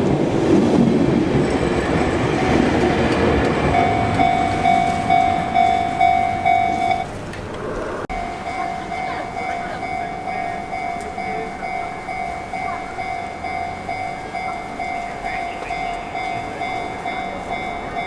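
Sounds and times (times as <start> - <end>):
train running noise: 0.0 - 18.0
level crossing bell ringing: 3.6 - 7.0, 8.1 - 18.0.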